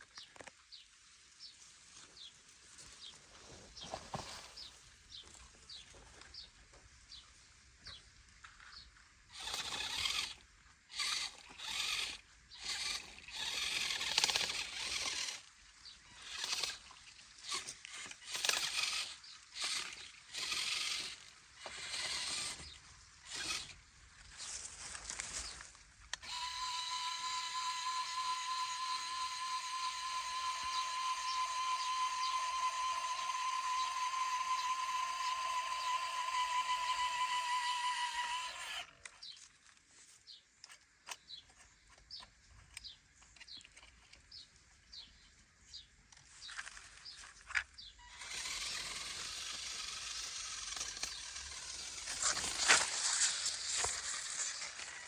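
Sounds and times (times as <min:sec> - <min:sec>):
toy electric motor whirring: 0:08.7 - 0:39.5, 0:46.4 - 0:55.0.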